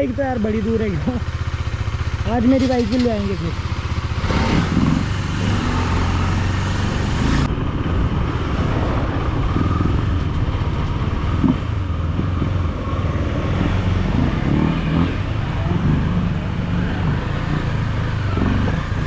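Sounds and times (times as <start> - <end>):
motorcycle engine running: 0.0 - 19.0.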